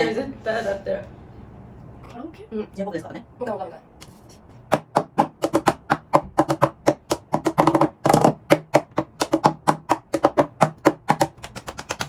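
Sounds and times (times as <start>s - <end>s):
hands tapping and knocking: 4.7s - 12.0s.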